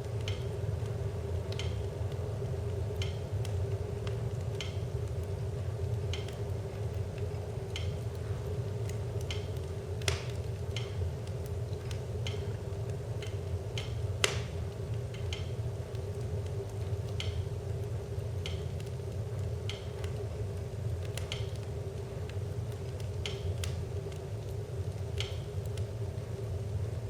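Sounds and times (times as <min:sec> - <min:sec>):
soft regular tick: 0:00.0 - 0:26.2
wood fire burning: 0:00.0 - 0:27.0
sharp crackling pops: 0:00.1 - 0:25.9.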